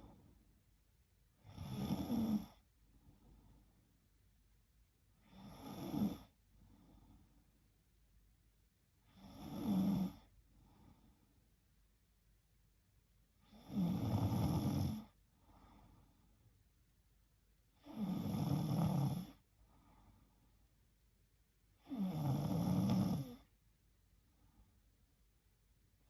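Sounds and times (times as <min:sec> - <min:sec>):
faint breathing: 0:00.0 - 0:00.6, 0:02.1 - 0:04.0, 0:06.3 - 0:07.7, 0:10.1 - 0:11.6, 0:14.9 - 0:16.6, 0:19.2 - 0:20.8, 0:24.2 - 0:25.0
woman snoring: 0:01.4 - 0:02.6, 0:05.2 - 0:06.3, 0:09.1 - 0:10.3, 0:13.4 - 0:15.2, 0:17.8 - 0:19.4, 0:21.8 - 0:23.5.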